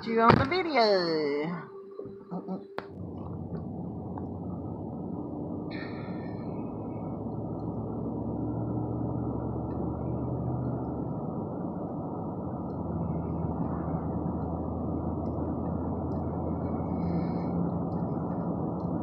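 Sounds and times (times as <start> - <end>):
car engine and road rumble: 0.0 - 19.0
brief high-pitched tone: 1.5 - 2.9.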